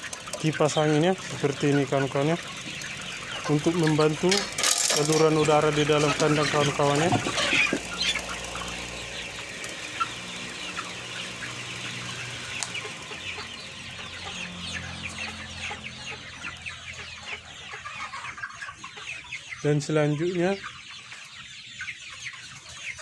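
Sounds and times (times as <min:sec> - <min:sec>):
electric fan hum: 0:00.0 - 0:15.1
chickens clucking: 0:00.0 - 0:23.0.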